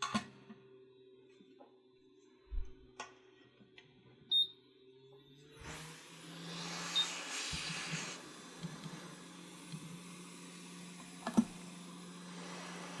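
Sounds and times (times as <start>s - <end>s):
steady hiss: 5.6s - 13.0s.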